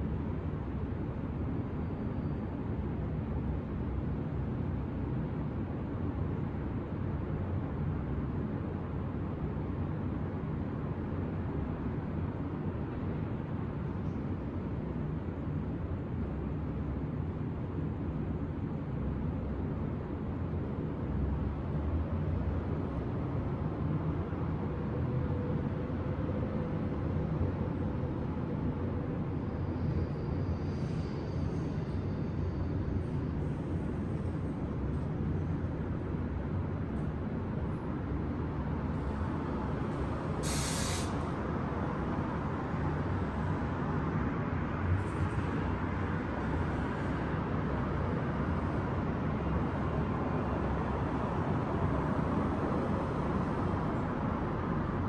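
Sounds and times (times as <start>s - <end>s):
city traffic hum: 0.0s - 55.0s
faint high squeal: 1.8s - 2.5s, 29.4s - 33.3s
short sharp hiss: 40.4s - 41.2s.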